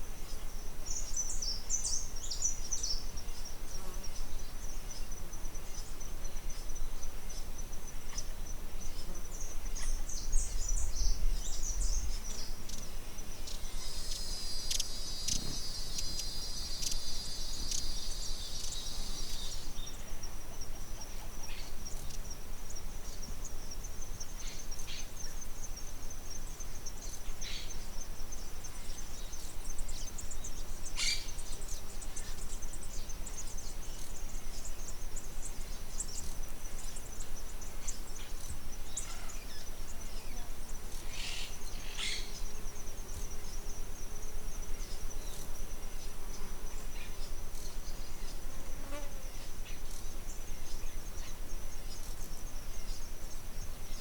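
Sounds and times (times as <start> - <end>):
high insect chorus: 0.0 - 54.0
insect trill: 0.0 - 54.0
bird chirps: 8.9 - 20.0, 28.9 - 43.6.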